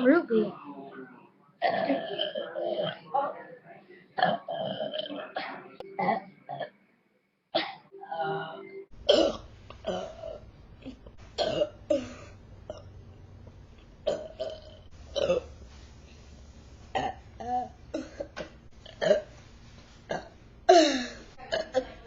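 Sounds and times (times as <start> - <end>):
woman burping: 1.6 - 3.0, 4.2 - 6.7, 9.1 - 12.9, 14.0 - 15.5, 16.9 - 19.3, 20.1 - 22.0.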